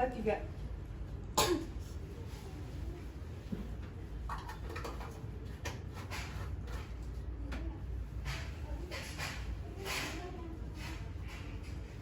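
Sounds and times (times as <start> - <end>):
forceful cough: 1.4 - 1.7.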